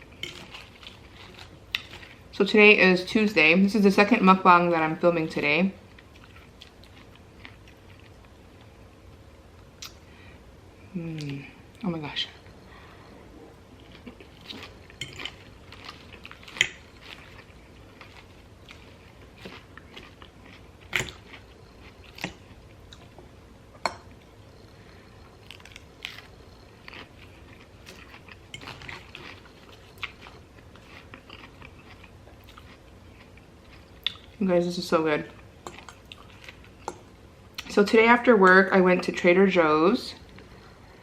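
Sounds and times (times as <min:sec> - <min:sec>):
chewing and crunching salad: 0:00.0 - 0:03.2, 0:04.0 - 0:08.8, 0:13.6 - 0:38.0.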